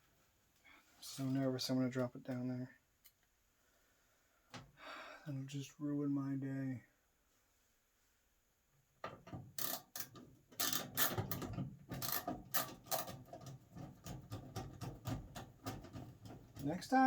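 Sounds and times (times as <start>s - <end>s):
screwdriver clicking and rattling: 9.6s - 16.4s.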